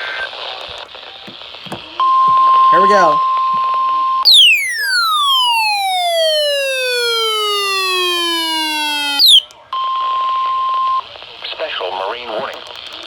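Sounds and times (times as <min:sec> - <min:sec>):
weather radio alert tone: 0:02.1 - 0:03.4, 0:04.3 - 0:09.4
electronic tone gliding down: 0:04.3 - 0:09.4
short upward chirp: 0:04.3 - 0:09.4.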